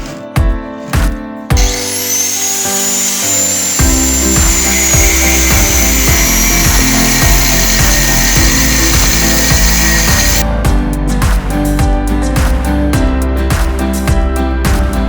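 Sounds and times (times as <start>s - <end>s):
background music with beat: 0.0s - 1.8s, 3.8s - 15.0s
electric drill whining: 1.6s - 10.4s.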